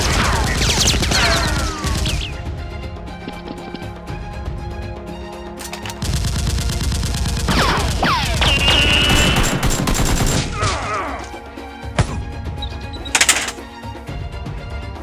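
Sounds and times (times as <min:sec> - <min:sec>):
rapid automatic gunfire: 0:00.0 - 0:02.3, 0:06.0 - 0:10.5
background music: 0:00.0 - 0:15.0.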